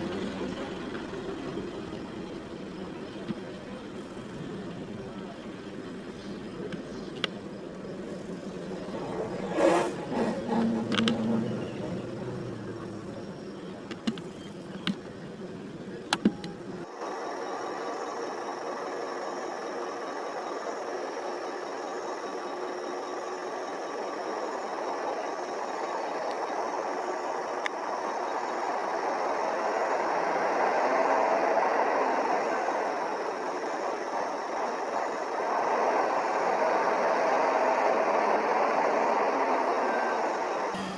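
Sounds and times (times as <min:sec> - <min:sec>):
vehicle engine running: 0:00.0 - 0:40.9
sharp clicks: 0:10.6 - 0:11.4.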